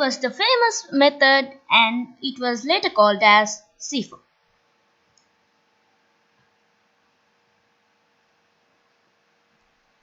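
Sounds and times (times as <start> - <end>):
faint electrical hum and hiss: 0.0 - 10.0.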